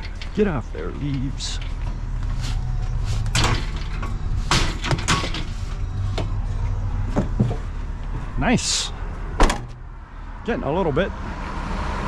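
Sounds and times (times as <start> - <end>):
metal ironing board clanking: 0.0 - 6.4
low engine hum: 0.0 - 12.0.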